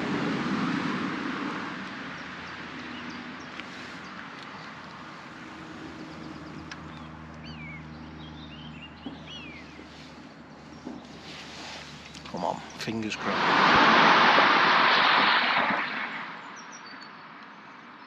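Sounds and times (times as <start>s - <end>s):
wind-like rush: 0.0s - 6.8s, 11.0s - 16.6s
distant engine drone: 0.0s - 16.9s
bird chirps: 2.9s - 12.8s.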